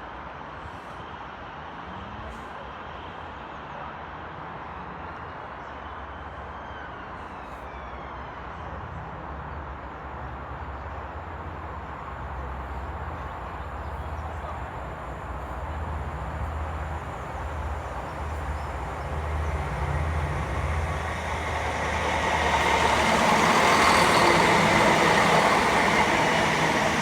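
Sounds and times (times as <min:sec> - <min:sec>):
low engine rumble: 0:13.6 - 0:27.0.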